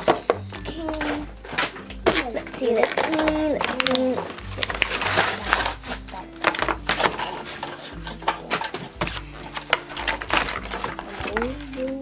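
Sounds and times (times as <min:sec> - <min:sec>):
plastic packaging crinkling and tearing: 0:00.0 - 0:12.0
small plastic pieces clicking: 0:00.0 - 0:12.0.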